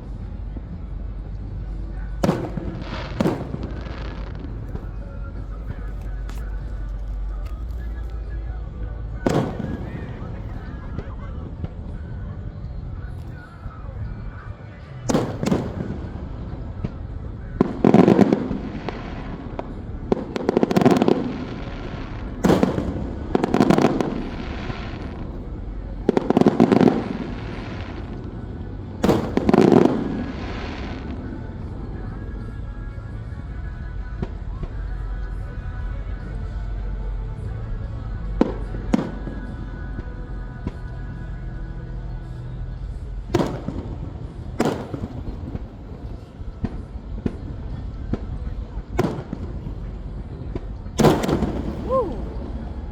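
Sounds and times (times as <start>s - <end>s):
faint music: 0.0s - 52.9s
fireworks bursting: 2.2s - 8.4s, 9.2s - 12.2s, 13.0s - 32.6s, 38.4s - 40.8s, 43.3s - 52.9s.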